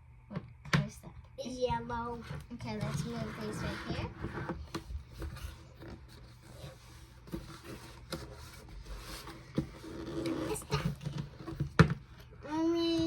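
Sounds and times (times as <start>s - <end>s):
steady low hum: 0.0s - 13.0s
plastic tubs knocking and clicking: 10.6s - 12.2s.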